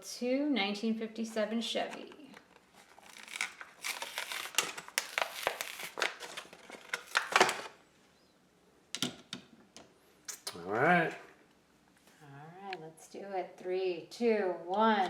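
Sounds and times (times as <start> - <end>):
blister packaging crinkling and ripping: 2.4 - 7.8.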